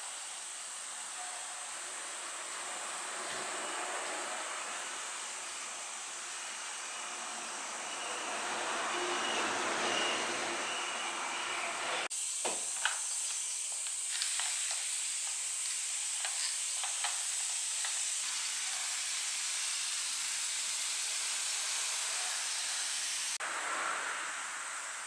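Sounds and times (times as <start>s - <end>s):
food sizzling in a frying pan: 14.0s - 25.0s.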